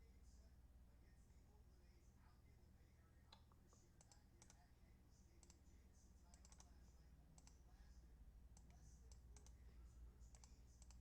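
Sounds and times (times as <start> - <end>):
low steady hum: 0.0 - 11.0
computer keyboard and mouse clicks: 3.3 - 4.6, 5.4 - 5.6, 6.3 - 6.7, 7.4 - 7.6, 8.6 - 9.6, 10.3 - 11.0.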